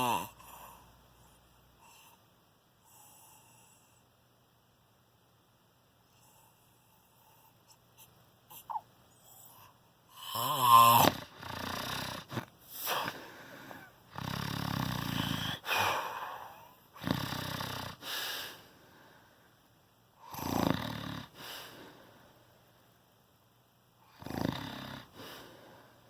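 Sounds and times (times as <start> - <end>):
person snoring loudly: 0.0 - 0.8, 10.1 - 13.2, 13.8 - 18.4, 20.2 - 21.7, 24.1 - 25.5.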